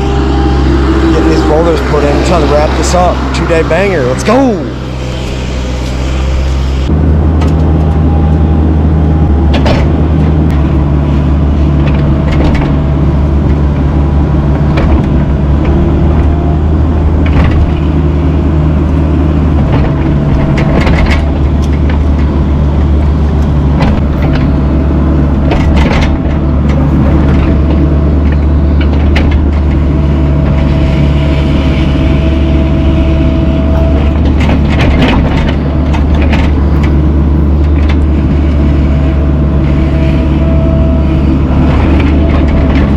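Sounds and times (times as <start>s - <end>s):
excavator diesel engine: 0.0s - 42.9s
sharp knocks and clanks: 25.4s - 29.8s, 33.9s - 38.2s.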